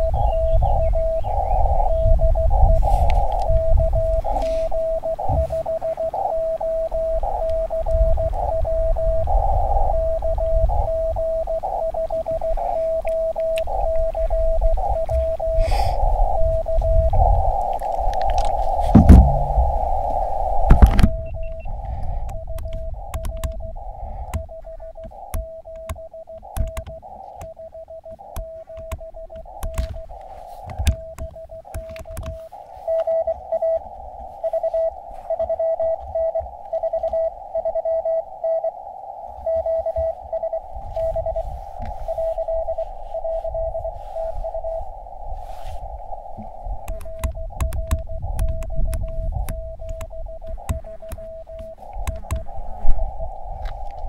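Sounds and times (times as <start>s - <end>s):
morse code tone: 0.0s - 17.5s, 19.0s - 19.8s, 20.7s - 38.8s, 39.4s - 44.9s, 46.9s - 53.4s
receiver band hiss: 0.0s - 54.0s
loud low rumble: 19.0s - 20.0s.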